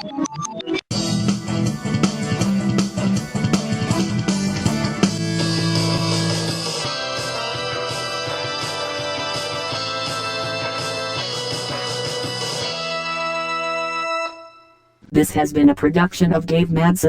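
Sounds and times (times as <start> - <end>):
music with drums and beat: 0.9 - 13.0.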